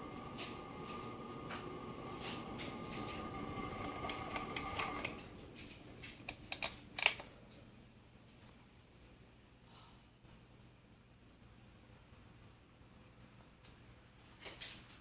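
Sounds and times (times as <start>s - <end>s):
faint hum: 0.0s - 14.3s
ceiling fan motor whine: 0.0s - 15.0s
sharp clicks and rattles: 2.5s - 7.4s.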